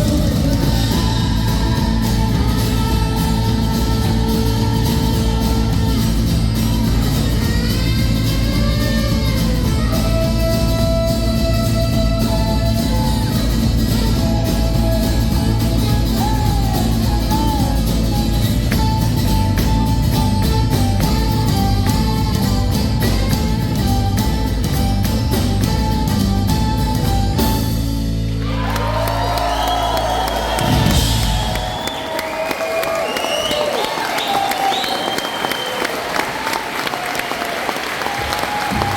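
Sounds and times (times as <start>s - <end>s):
person singing: 0.0s - 23.6s
live rock band: 0.0s - 37.0s.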